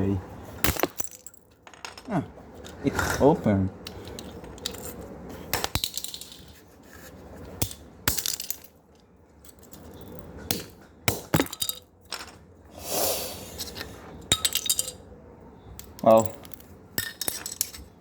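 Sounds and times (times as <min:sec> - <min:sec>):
scraping rustle: 0:06.4 - 0:07.6.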